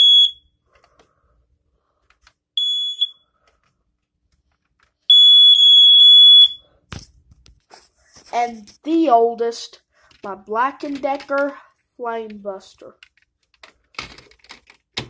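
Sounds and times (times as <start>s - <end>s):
smoke alarm beeping: 0.0s - 0.5s, 2.6s - 3.2s, 5.1s - 6.7s.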